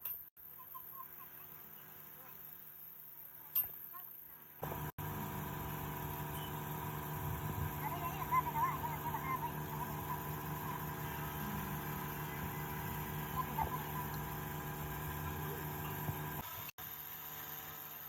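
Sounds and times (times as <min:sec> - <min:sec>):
steady mechanical hum: 0:04.6 - 0:18.0.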